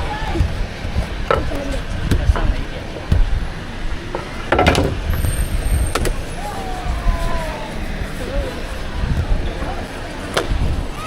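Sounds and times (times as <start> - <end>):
steady low rumble: 0.0 - 11.0
voices talking: 0.0 - 11.0
sharp knocks and clicks: 4.1 - 5.0.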